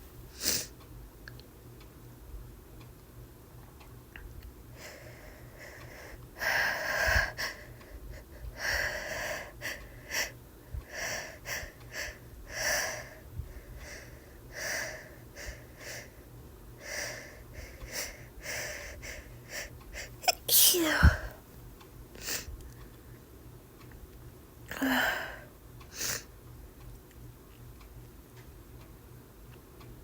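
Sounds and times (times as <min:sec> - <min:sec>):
woman's hitching gasps: 0:20.0 - 0:21.4.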